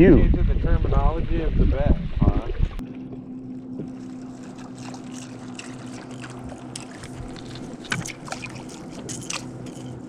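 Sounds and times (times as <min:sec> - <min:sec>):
boat low hum: 0:00.0 - 0:10.0
light water sounds: 0:02.2 - 0:10.0.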